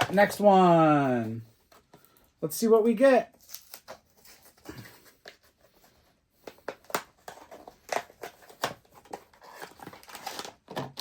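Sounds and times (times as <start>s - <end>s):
cardboard rustling: 3.4s - 11.0s.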